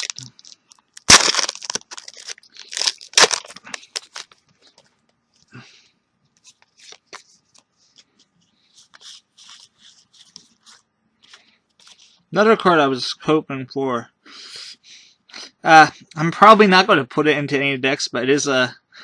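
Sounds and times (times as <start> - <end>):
wrapper crinkling and tearing: 0.0 - 4.8
cards rustling: 0.0 - 4.9, 6.4 - 12.2.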